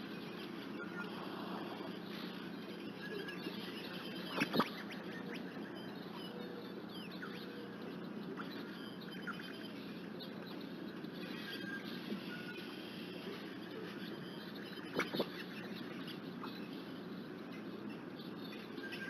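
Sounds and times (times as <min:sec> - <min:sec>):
faint high chirps: 0:00.1 - 0:19.0.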